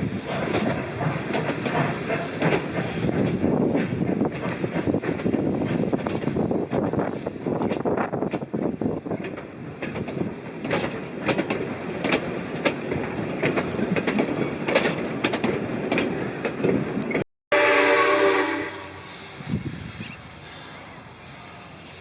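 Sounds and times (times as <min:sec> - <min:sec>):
train wheels clattering on rails: 0:00.0 - 0:17.2
steam whistle: 0:17.5 - 0:19.4.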